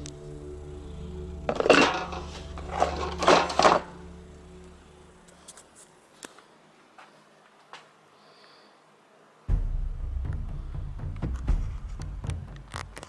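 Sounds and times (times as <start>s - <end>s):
low steady hum: 0.0s - 12.8s
metal and wood clattering: 1.5s - 4.0s.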